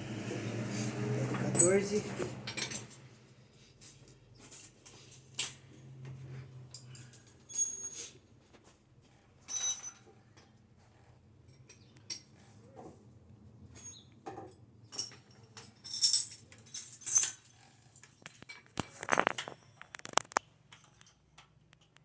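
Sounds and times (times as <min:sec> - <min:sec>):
metal screws and tools clinking: 0:06.7 - 0:08.2, 0:09.4 - 0:10.5, 0:13.7 - 0:21.5.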